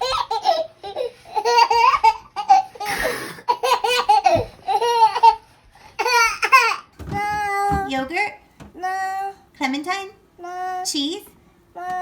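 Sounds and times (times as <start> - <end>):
baby laughing: 0.0 - 6.9.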